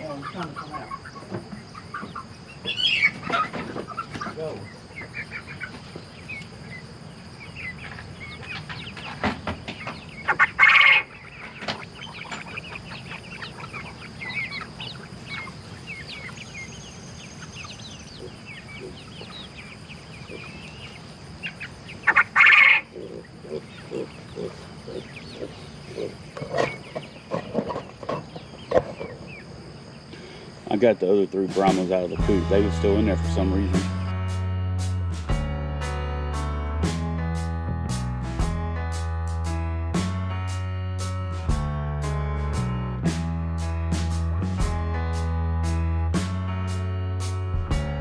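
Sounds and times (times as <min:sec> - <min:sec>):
chicken squawking: 0:00.0 - 0:01.2, 0:01.8 - 0:04.4, 0:10.2 - 0:11.4, 0:18.1 - 0:19.4, 0:22.0 - 0:26.8
chickens clucking: 0:00.0 - 0:29.5, 0:30.2 - 0:34.4.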